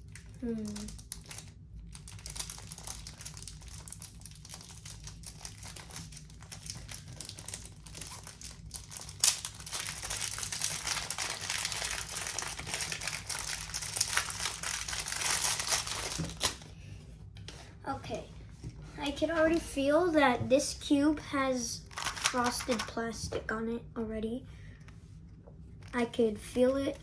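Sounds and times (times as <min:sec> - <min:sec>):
plastic packaging crinkling: 0:00.1 - 0:16.7, 0:21.8 - 0:23.0.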